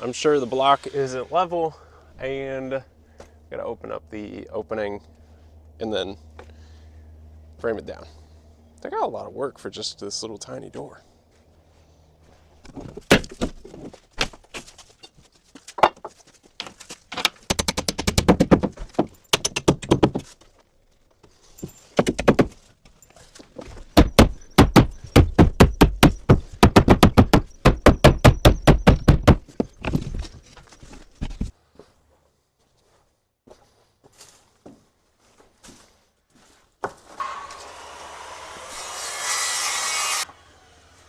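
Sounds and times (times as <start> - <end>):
hammer blows: 23.9 - 29.8.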